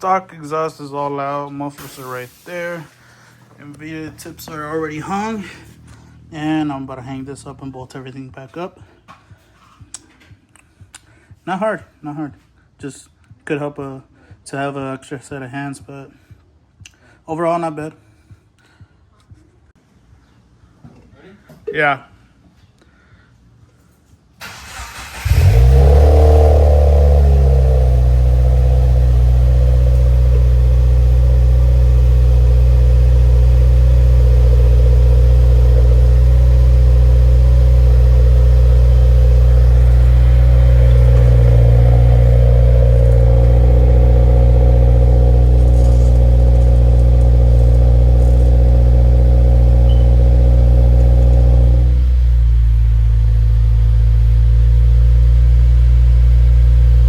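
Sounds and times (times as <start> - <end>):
car engine starting and idling: 1.8 - 8.1, 24.4 - 57.0.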